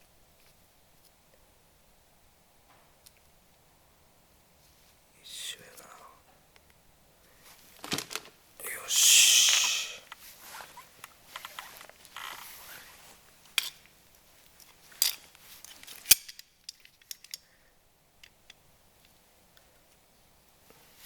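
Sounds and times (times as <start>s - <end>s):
metal parts clicking and clinking: 15.0s - 17.4s.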